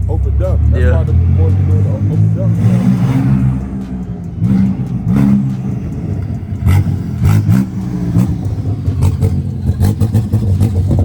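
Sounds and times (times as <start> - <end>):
car engine revving: 0.0 - 11.0
sharp exhaust cracks: 0.0 - 11.0.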